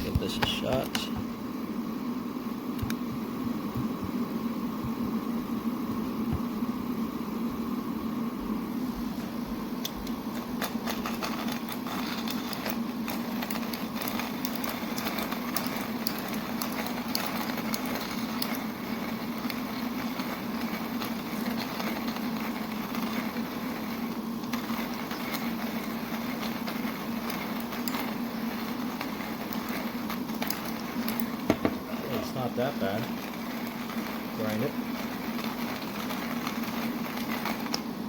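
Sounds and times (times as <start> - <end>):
manual coffee grinder grinding: 0.0 - 1.1, 9.7 - 38.0
coffee beans crackling: 0.0 - 1.2, 9.2 - 38.0.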